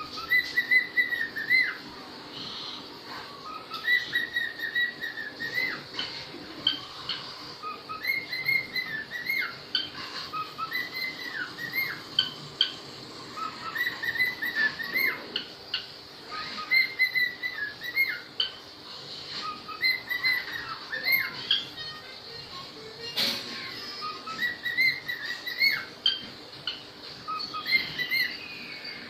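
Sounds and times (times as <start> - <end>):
parrots chirping and whistling: 0.0 - 29.0.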